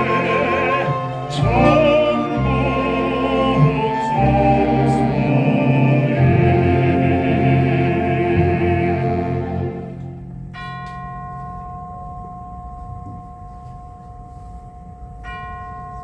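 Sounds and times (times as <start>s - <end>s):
baritone operatic singing: 0.0s - 10.0s
orchestra playing: 0.0s - 10.5s.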